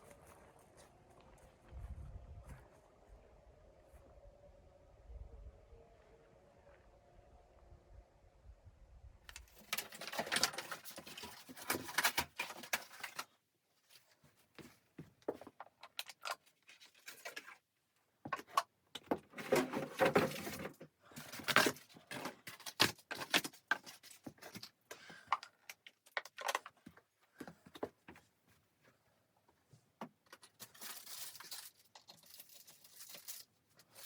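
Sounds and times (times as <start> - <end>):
rustling and clattering of handled objects: 9.3 - 34.0.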